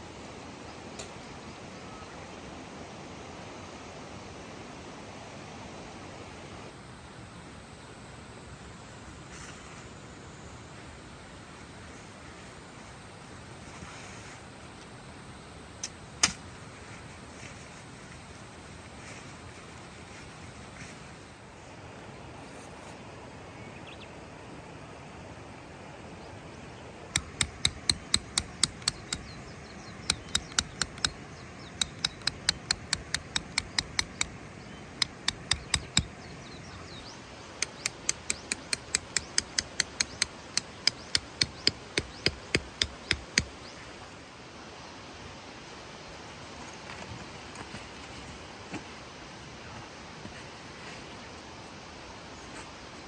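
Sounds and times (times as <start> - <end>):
hammer striking tent pegs: 27.1 - 29.3, 30.0 - 34.4, 35.0 - 36.1, 37.6 - 43.5.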